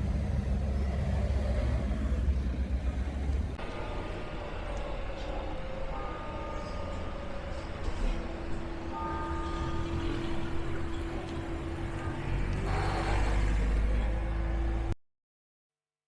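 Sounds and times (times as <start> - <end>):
motor vehicle rumble: 0.0 - 3.8
traffic noise: 0.0 - 15.0.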